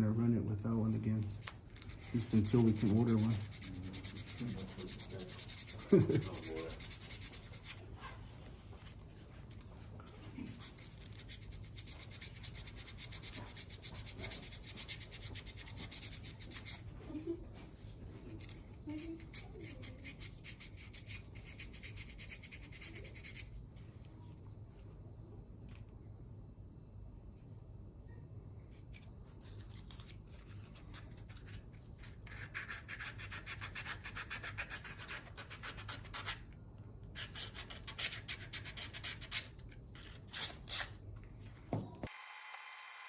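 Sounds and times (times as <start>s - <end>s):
sandpaper rubbing by hand: 1.9s - 7.8s.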